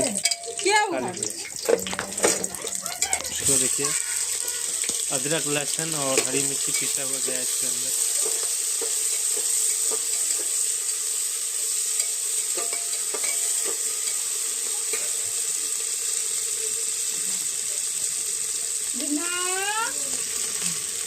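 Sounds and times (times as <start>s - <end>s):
meat sizzling in a pan: 0.0s - 21.0s
spoon clicking against a pan: 0.2s - 0.6s, 11.9s - 14.2s.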